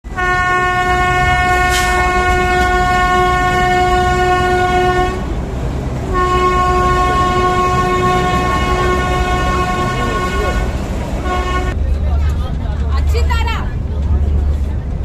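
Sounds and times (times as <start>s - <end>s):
train horn blasts: 0.1s - 5.3s, 6.1s - 11.8s.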